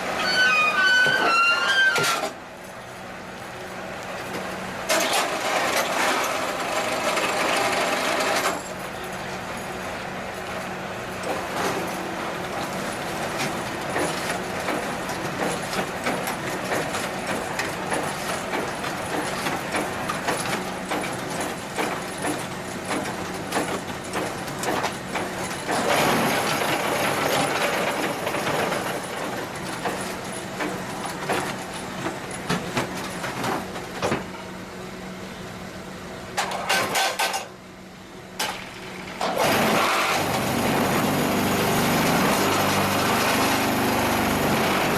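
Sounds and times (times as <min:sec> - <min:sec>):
metallic knocks and clatter: 0:36.4 - 0:37.5.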